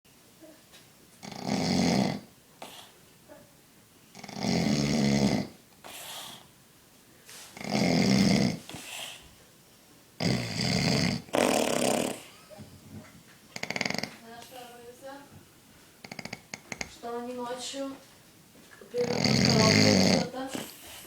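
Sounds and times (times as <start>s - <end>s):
man snoring loudly: 1.2s - 2.3s, 4.2s - 5.6s, 7.6s - 8.6s, 10.2s - 12.3s, 13.6s - 14.1s, 19.0s - 20.3s.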